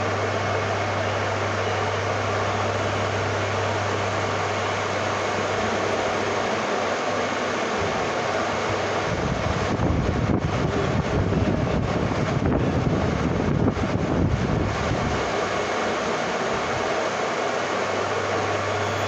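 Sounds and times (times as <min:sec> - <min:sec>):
lathe humming: 0:17.6 - 0:19.0.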